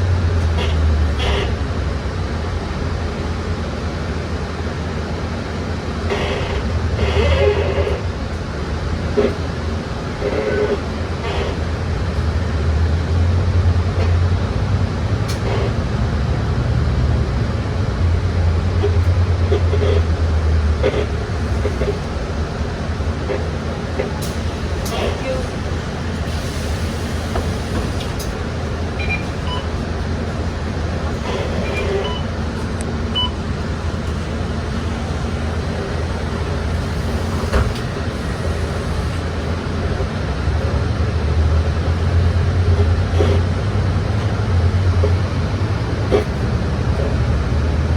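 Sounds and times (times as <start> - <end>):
bus engine drone: 0.0 - 47.9
bus body creaking: 18.9 - 40.2.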